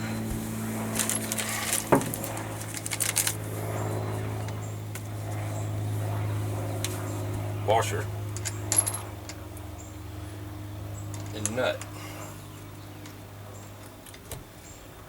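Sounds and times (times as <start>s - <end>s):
low hum: 0.0s - 14.8s
small metal parts clinking: 1.0s - 3.4s, 8.4s - 9.1s.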